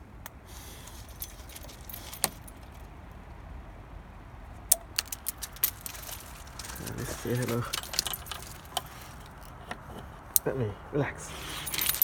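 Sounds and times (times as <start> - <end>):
hard objects clicking and clinking: 4.7 - 9.6, 11.6 - 12.0.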